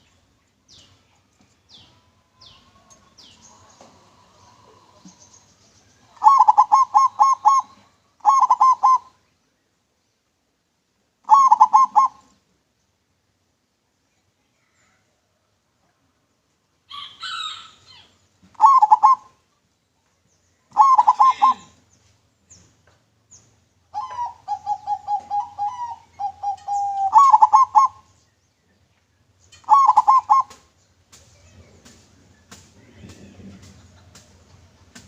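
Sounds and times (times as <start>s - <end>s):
dove cooing: 6.1s - 9.2s, 11.2s - 12.4s, 18.5s - 19.4s, 20.7s - 21.8s, 23.9s - 28.1s, 29.6s - 30.7s
bird chirps: 20.2s - 31.0s.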